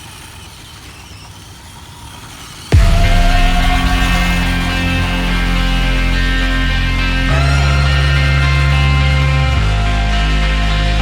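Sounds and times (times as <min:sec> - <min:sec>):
rock music with held chords: 0:02.8 - 0:11.0.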